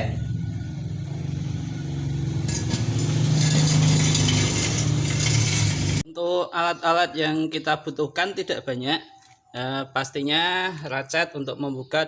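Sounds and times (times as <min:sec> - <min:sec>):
vehicle engine running: 0:00.0 - 0:06.0.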